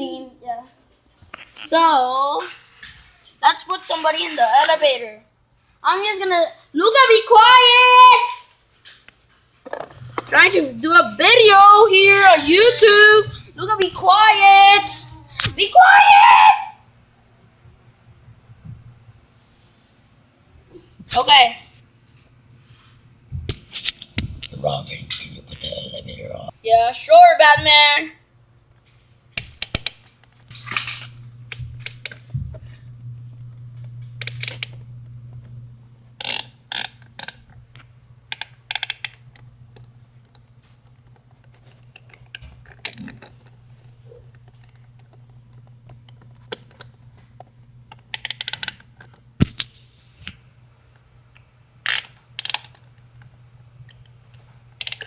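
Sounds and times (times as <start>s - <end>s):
plastic toy pieces clicking: 36.2s - 37.4s, 38.3s - 39.2s, 47.9s - 49.2s, 51.9s - 52.8s, 54.8s - 55.0s.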